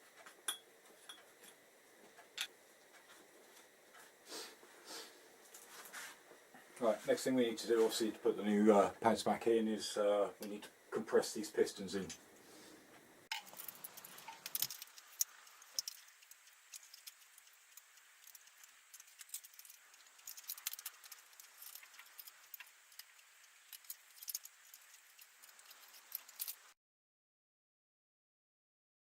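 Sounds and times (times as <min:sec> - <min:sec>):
metal tools clicking and rattling: 0:13.3 - 0:26.6.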